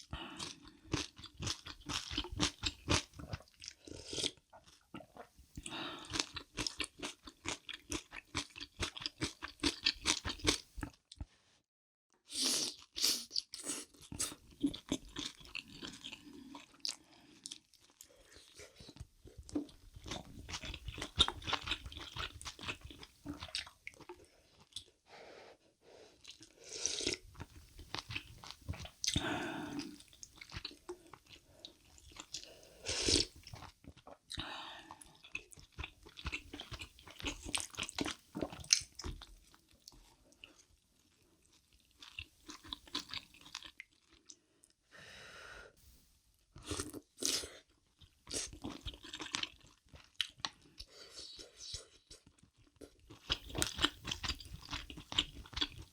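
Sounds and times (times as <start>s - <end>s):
crunchy chewing: 52.1s - 55.9s.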